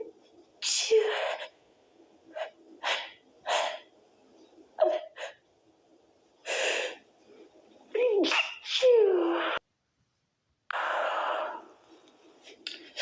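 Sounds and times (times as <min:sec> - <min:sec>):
woman's stifled sneezes: 0:08.1 - 0:09.6.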